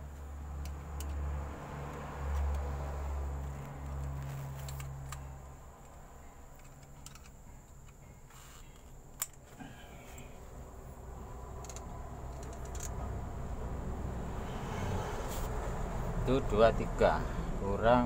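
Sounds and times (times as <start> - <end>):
low steady hum: 0.0 - 17.6
metal parts clicking: 3.9 - 10.3, 11.6 - 13.0.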